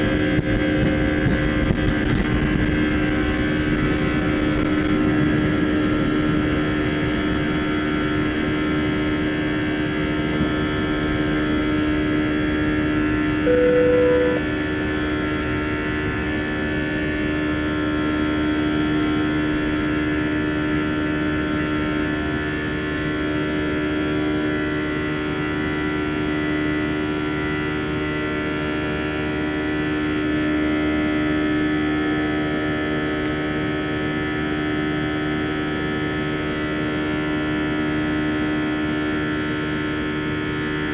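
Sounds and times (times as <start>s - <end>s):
jet engines heard from cabin: 0.0s - 40.9s
short single tone: 13.4s - 14.5s.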